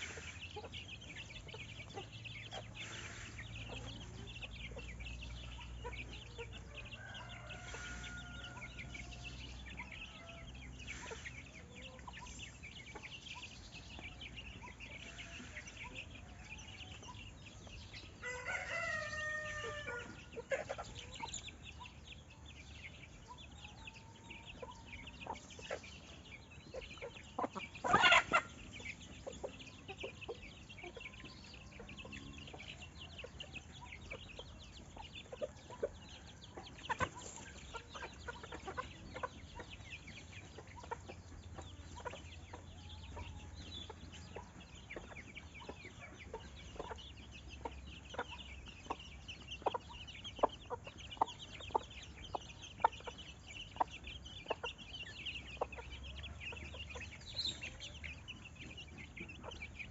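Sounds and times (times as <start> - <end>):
rooster crowing: 6.7 - 9.5, 18.2 - 20.2.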